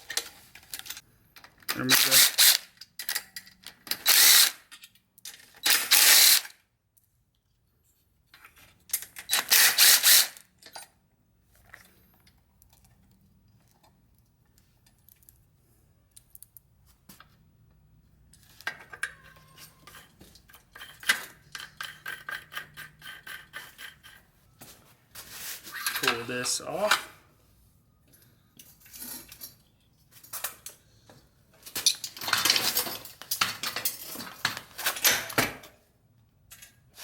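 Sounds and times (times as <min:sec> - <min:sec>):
hand ratchet clicking: 0:01.8 - 0:03.2
power tool bursts: 0:01.9 - 0:02.6, 0:04.1 - 0:04.6, 0:05.7 - 0:06.5.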